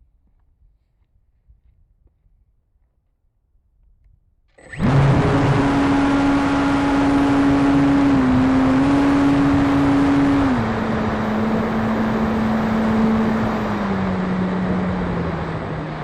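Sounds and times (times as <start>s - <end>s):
electric motor and propeller whining: 4.6s - 16.0s.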